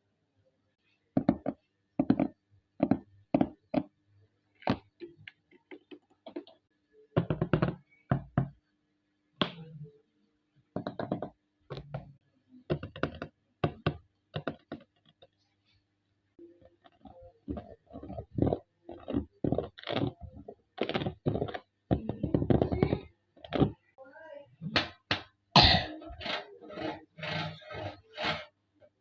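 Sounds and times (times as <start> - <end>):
hand tapping on objects: 10.8 - 12.1.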